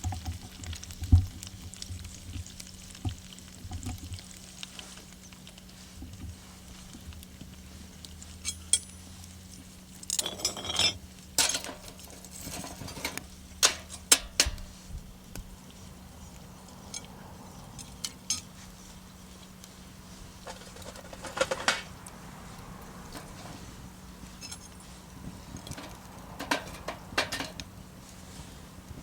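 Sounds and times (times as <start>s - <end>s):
metal tongs scraping frying pan: 8.4s - 8.9s, 10.2s - 14.7s, 20.4s - 21.9s, 23.1s - 23.7s, 24.3s - 24.9s, 25.5s - 27.7s
rattling: 10.2s - 14.5s, 20.5s - 21.9s, 25.6s - 27.6s.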